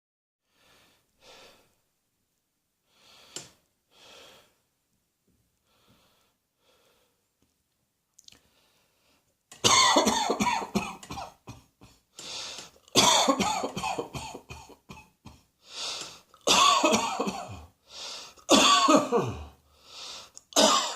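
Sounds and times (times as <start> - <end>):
faint breaths: 0.5 - 1.9, 2.8 - 4.7, 5.6 - 7.4, 8.4 - 9.4, 11.8 - 12.8, 15.3 - 16.4, 17.8 - 18.5, 19.3 - 20.5
person coughing hard: 9.6 - 12.0, 13.0 - 15.5, 16.5 - 17.7, 18.5 - 19.6, 20.6 - 20.9.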